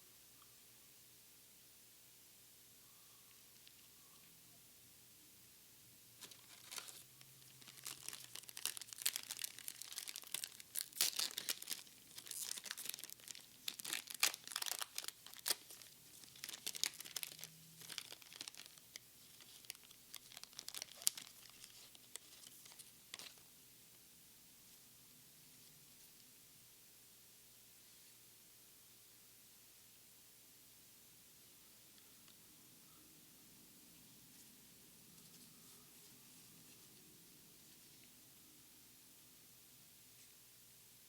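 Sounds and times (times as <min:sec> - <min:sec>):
foil wrapper tearing and crinkling: 0:06.2 - 0:23.4.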